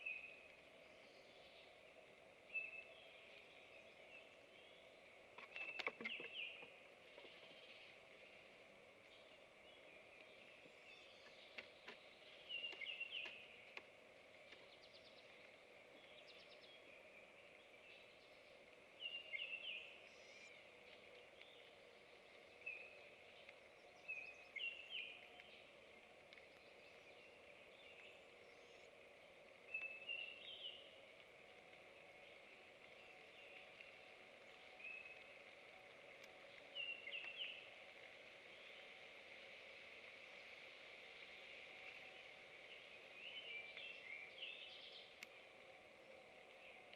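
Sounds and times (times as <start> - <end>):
faint woodland background noise: 0.0 - 46.9
songbird chirping: 0.0 - 46.9
faint clicks: 20.0 - 30.2, 30.9 - 40.6, 43.7 - 46.9.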